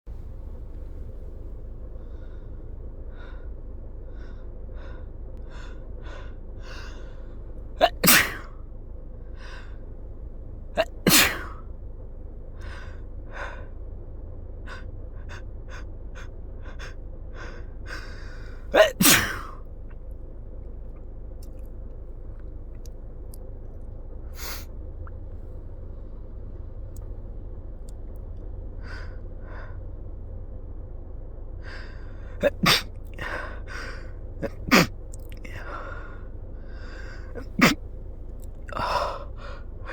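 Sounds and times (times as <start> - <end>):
short breaths: 0.6 - 8.5, 9.2 - 9.9, 12.6 - 13.8, 14.7 - 19.6, 24.4 - 24.7, 31.6 - 39.9
person sneezing: 7.8 - 8.5, 10.8 - 11.6, 18.7 - 19.6, 24.4 - 24.7, 32.4 - 36.2, 36.8 - 37.8, 38.7 - 39.9.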